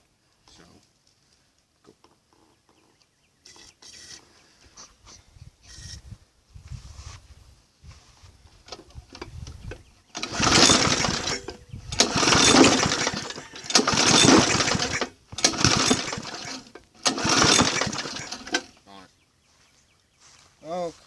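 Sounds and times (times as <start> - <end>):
lawn mower engine cranking: 8.7 - 18.8.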